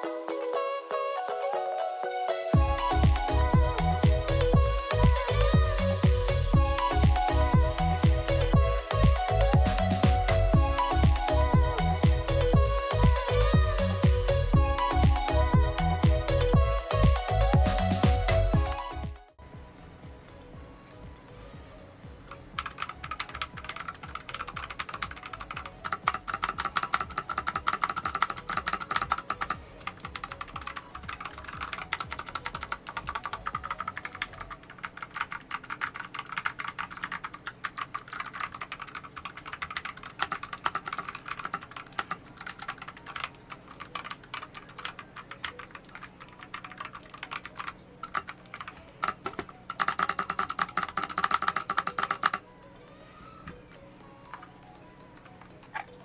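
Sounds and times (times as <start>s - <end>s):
mechanical keyboard typing: 22.6s - 52.4s.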